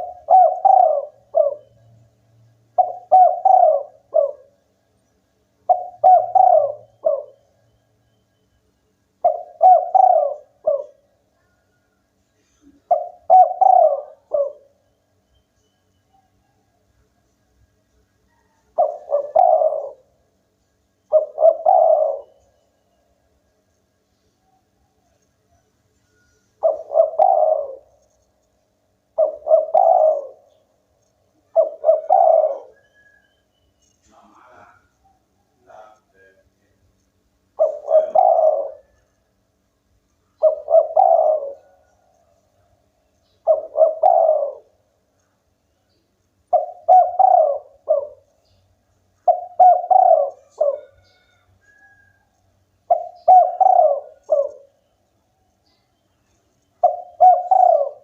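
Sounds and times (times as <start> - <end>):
dove cooing: 0.0 - 1.9, 2.8 - 4.6, 5.7 - 7.6, 9.2 - 11.7, 12.4 - 14.8, 18.3 - 20.2, 21.1 - 22.6, 26.2 - 28.2, 29.0 - 30.8, 31.4 - 33.3, 37.5 - 39.3, 40.3 - 45.3, 46.5 - 48.6, 49.2 - 54.8, 56.8 - 58.0.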